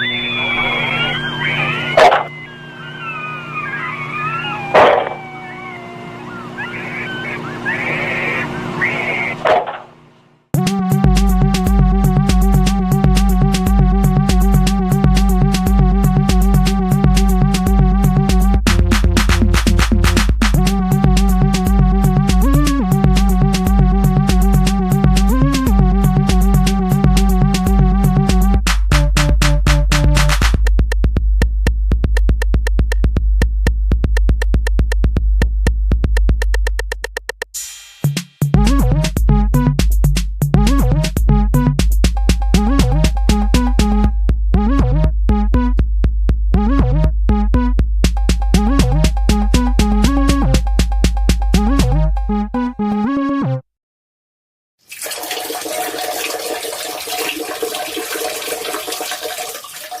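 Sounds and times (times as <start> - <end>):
deep bass note: 10.6 - 30.2, 42.5 - 50.9
ticking electronic percussion: 34.1 - 45.9, 46.6 - 52.8.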